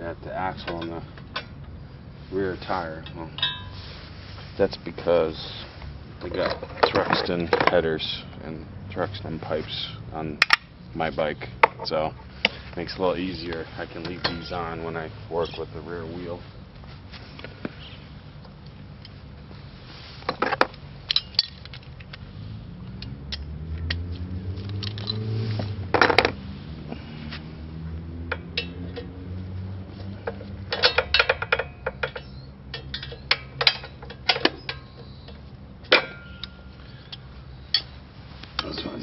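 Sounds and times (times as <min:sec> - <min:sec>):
metal tools clinking: 0:02.7 - 0:03.8, 0:06.2 - 0:07.8, 0:13.5 - 0:14.8, 0:20.4 - 0:22.2, 0:24.6 - 0:25.3, 0:30.1 - 0:38.0
low hum with shifting pitch: 0:22.2 - 0:30.6.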